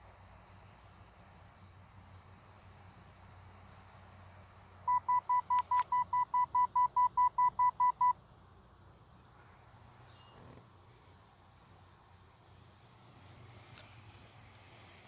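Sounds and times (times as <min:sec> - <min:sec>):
short electronic beeps: 0:04.9 - 0:08.2.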